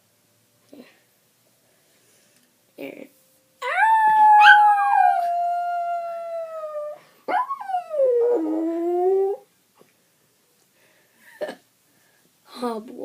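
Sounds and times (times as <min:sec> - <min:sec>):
dog howling: 0:03.6 - 0:09.4.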